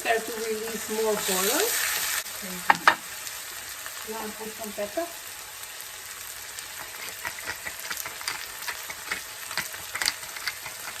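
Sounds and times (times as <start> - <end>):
vegetables frying in oil: 0.0 - 11.0
oil crackling and popping: 5.7 - 11.0.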